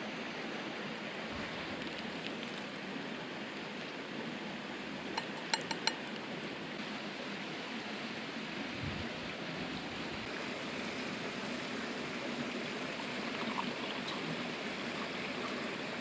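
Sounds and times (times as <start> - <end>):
river water rushing: 6.8 - 16.0.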